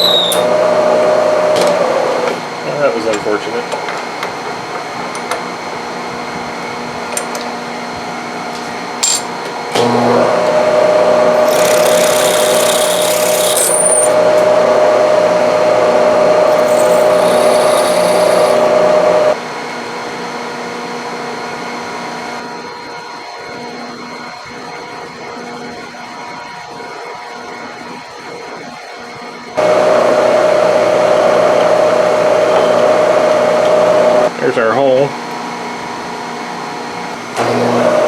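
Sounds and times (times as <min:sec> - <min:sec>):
drill bit cutting metal: 0:00.0 - 0:01.5, 0:09.0 - 0:19.4, 0:29.6 - 0:34.3
milling machine humming: 0:00.0 - 0:19.4, 0:29.6 - 0:34.3
high scraping noise: 0:11.3 - 0:19.4.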